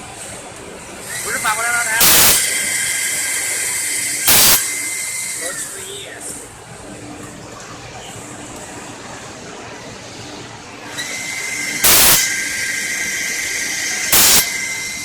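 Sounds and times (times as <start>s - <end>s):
high-pitched motor whine: 1.0s - 6.2s, 10.9s - 15.0s
short loud bursts of noise: 1.2s - 2.9s, 4.2s - 4.9s, 11.8s - 12.5s, 14.1s - 14.8s.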